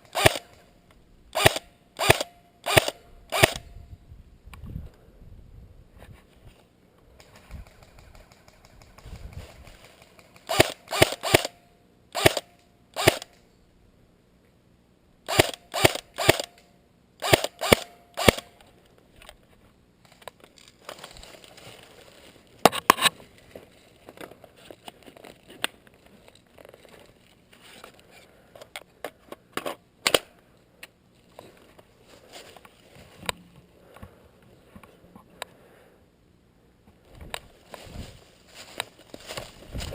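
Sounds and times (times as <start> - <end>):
airsoft rifle shots: 0.0 - 0.6, 1.3 - 3.7, 7.3 - 11.6, 12.2 - 13.4, 15.3 - 16.6, 17.2 - 18.5.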